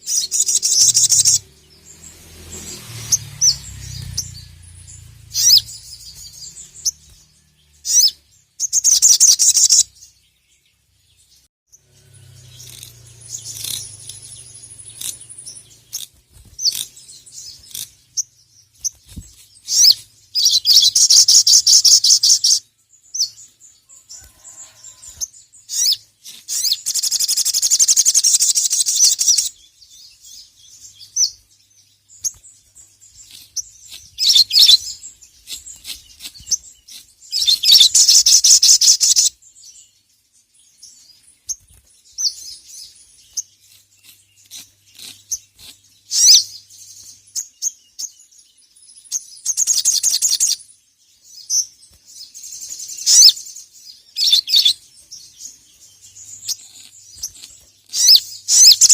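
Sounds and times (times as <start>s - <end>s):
bird high-pitched trills: 0.0s - 10.1s, 11.7s - 31.4s, 33.1s - 39.4s, 52.4s - 53.5s, 54.1s - 58.9s.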